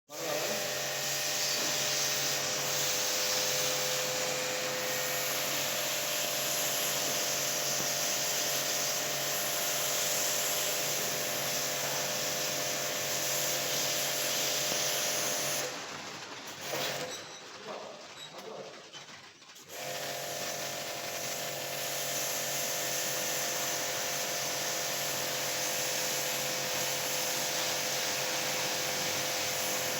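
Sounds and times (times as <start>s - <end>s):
machine running with loud hiss: 0.1s - 15.8s, 19.7s - 29.9s.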